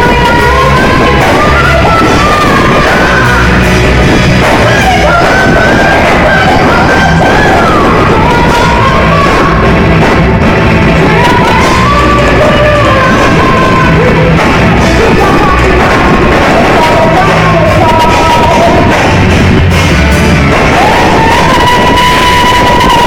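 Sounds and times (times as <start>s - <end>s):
lead singer singing: 0.0s - 10.2s, 10.8s - 19.5s, 20.5s - 23.0s
rock band playing live: 0.0s - 23.0s.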